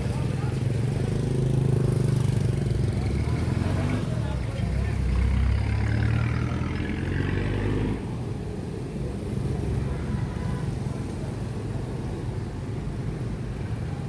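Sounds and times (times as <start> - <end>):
vehicle passing close by: 0.0 - 8.2
low traffic rumble: 0.0 - 14.0.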